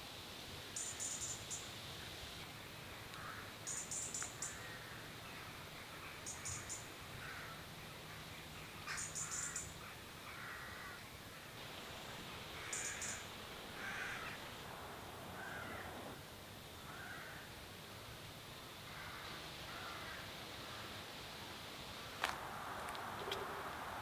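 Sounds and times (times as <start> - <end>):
crow-like caws: 3.2 - 7.7, 8.8 - 11.5, 12.6 - 14.5, 15.3 - 16.2, 16.8 - 17.6, 18.8 - 21.0.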